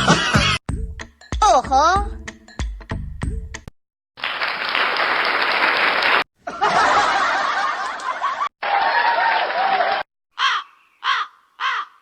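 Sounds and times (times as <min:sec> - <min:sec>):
canned crowd laughter: 0:06.4 - 0:10.0.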